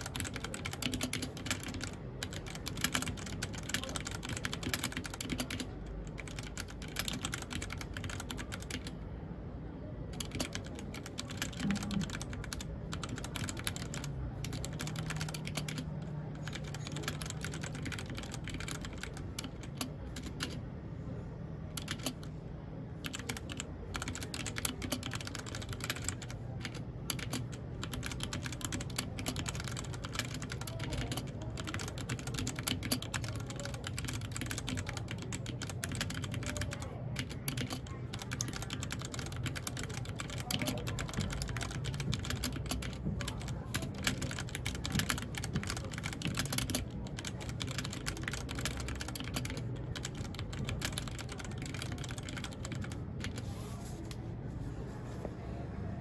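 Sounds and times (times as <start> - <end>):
typing on mechanical keyboard: 0.0 - 9.0, 10.1 - 20.7, 21.7 - 54.2.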